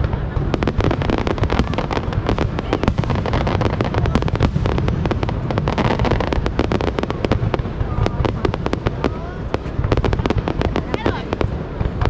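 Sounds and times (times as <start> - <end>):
fireworks cracking and popping: 0.0 - 12.0
low rumble of bursts: 0.0 - 12.0.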